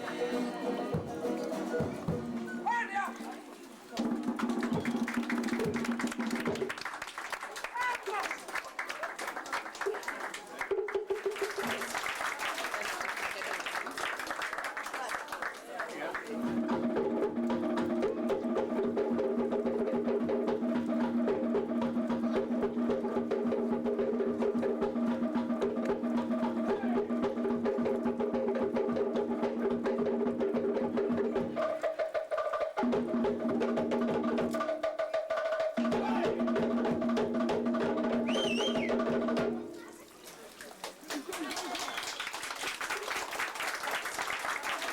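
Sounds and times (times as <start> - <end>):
fast percussion rhythm: 0.0 - 3.1, 4.0 - 6.9, 10.6 - 12.3, 16.3 - 39.7.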